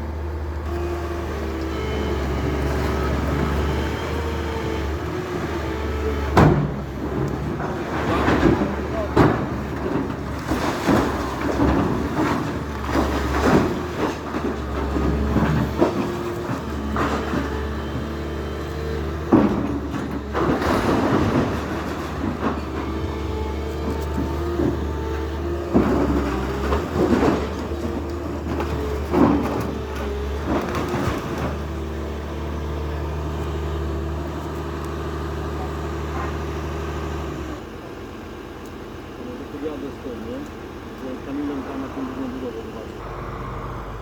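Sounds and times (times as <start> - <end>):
demolition machinery humming: 0.0 - 44.0
debris crashing: 6.4 - 17.7, 19.2 - 32.1.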